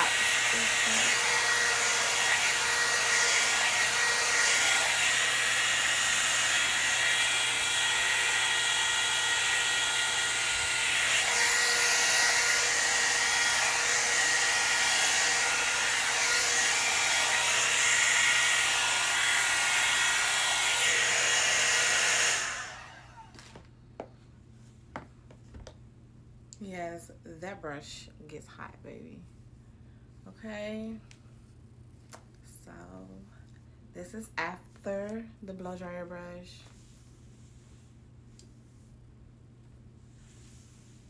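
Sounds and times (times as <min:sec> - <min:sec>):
blow dryer brush hissing and whining: 0:00.0 - 0:23.5.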